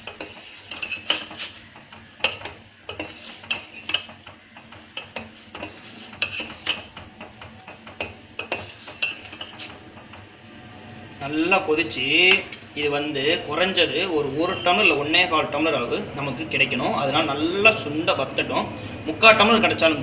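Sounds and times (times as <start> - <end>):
utensil clinking in pot: 0.0 - 10.2.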